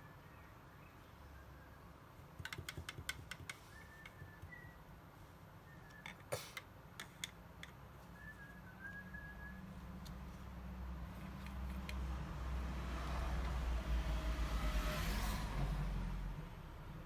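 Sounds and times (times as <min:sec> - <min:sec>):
road vehicle rumble: 0:07.5 - 0:17.0
light clicks and taps: 0:11.2 - 0:12.1.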